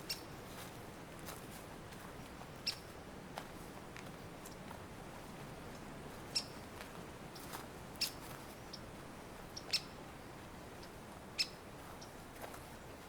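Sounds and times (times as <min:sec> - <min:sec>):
small bird chip calls: 0:00.0 - 0:00.4, 0:02.6 - 0:02.9, 0:06.3 - 0:06.6, 0:07.4 - 0:08.9, 0:09.5 - 0:10.0, 0:10.8 - 0:12.2
faint background hiss: 0:00.0 - 0:13.0.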